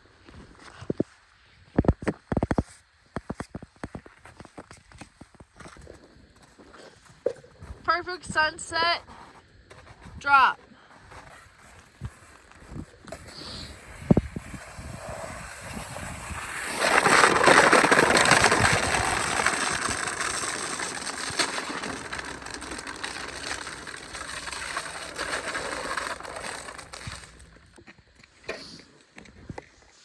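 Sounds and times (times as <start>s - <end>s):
sled scraping over snow: 11.1s - 27.6s.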